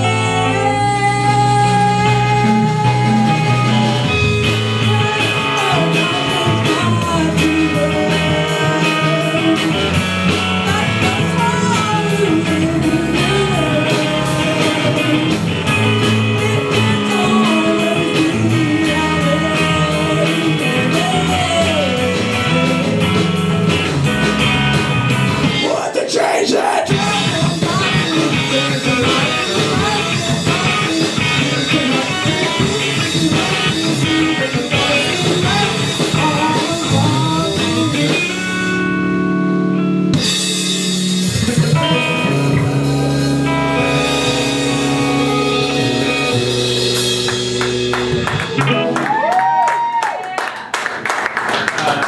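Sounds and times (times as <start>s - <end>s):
person singing: 0.0s - 23.8s, 25.4s - 38.9s
drum kit: 0.0s - 52.0s
electric guitar: 0.0s - 52.0s.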